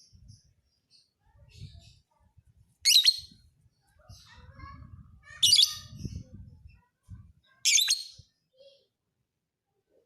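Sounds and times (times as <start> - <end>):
soft bird twittering: 0.0 - 4.5, 5.4 - 8.8
bird chirping shrilly: 2.9 - 3.4, 7.7 - 8.2.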